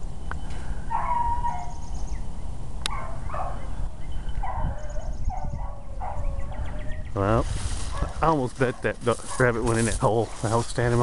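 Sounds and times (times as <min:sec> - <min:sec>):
hound baying: 0:00.9 - 0:01.8, 0:02.9 - 0:03.7, 0:04.4 - 0:06.9.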